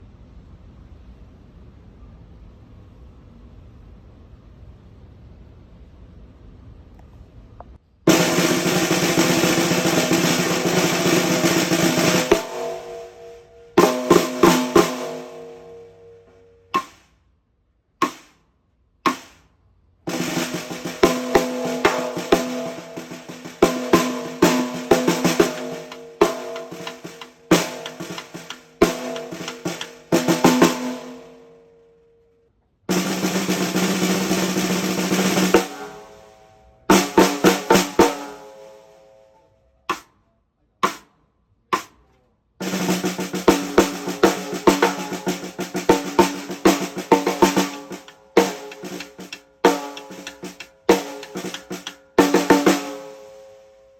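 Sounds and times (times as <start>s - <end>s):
snare drum strokes and rolls: 8.1s - 17.1s, 18.0s - 18.4s, 19.1s - 19.4s, 20.1s - 31.5s, 32.9s - 36.3s, 36.9s - 38.6s, 40.8s - 41.1s, 41.8s - 42.0s, 42.6s - 53.4s.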